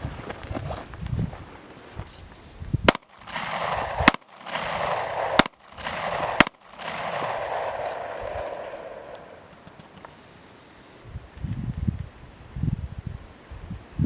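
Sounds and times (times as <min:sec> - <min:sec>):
pistol shots with long echo: 0:02.9 - 0:09.4.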